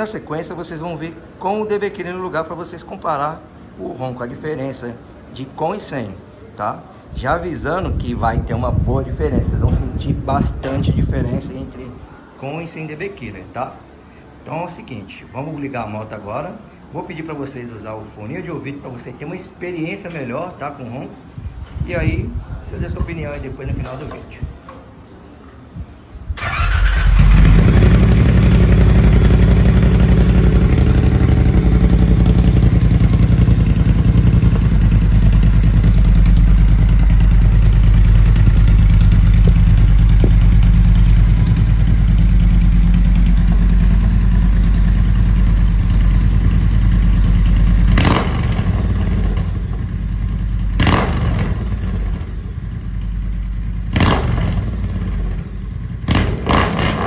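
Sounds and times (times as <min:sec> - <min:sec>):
motorcycle engine starting and idling: 0:22.0 - 0:24.5, 0:26.3 - 0:57.0.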